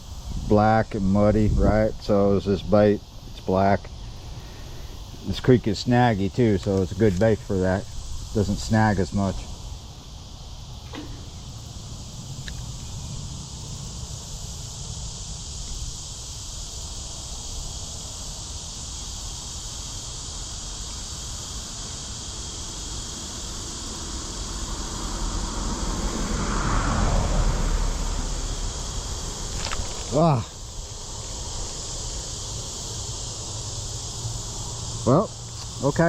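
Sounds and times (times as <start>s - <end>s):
wind rumble on microphone: 0.0s - 3.4s
high insect chorus: 0.0s - 36.0s.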